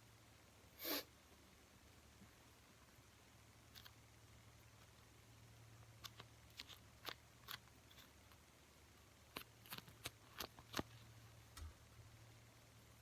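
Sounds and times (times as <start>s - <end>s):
small objects clicking and crinkling: 3.7s - 4.0s, 6.0s - 8.4s, 9.3s - 11.7s.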